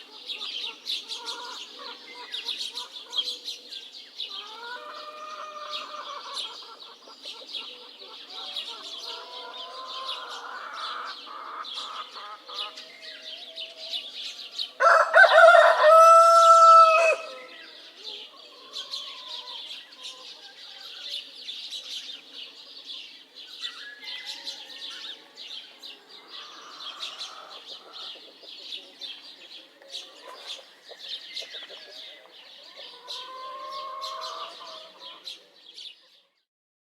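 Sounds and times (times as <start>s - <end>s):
small birds chirping: 0.0s - 36.5s
fowl clucking: 4.4s - 12.9s
rooster crowing: 14.8s - 17.6s, 24.0s - 25.3s, 33.0s - 35.0s.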